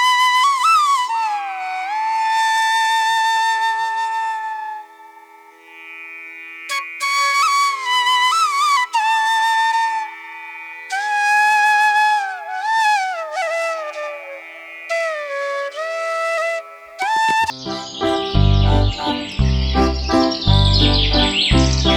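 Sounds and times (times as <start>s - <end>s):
sliding flute melody: 0.0s - 5.4s, 6.7s - 21.9s
steady drone: 17.4s - 21.9s.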